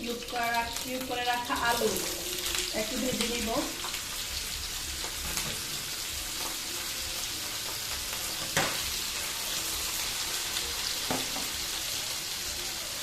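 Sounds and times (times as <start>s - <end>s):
potatoes sizzling in oil: 0.0s - 13.0s.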